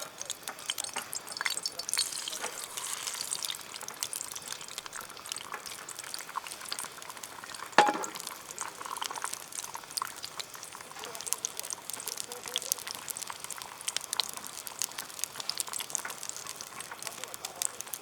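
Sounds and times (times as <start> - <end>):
food sizzling in a wok: 0.0 - 18.0
metal clank: 7.8 - 8.2.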